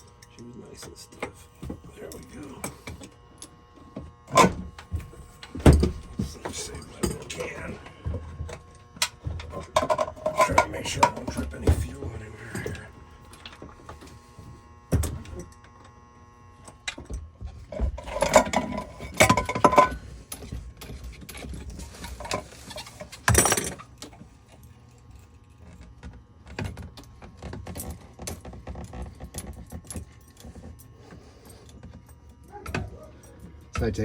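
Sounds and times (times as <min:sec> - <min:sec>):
metal tools clinking: 0:09.5 - 0:12.8, 0:18.0 - 0:24.1.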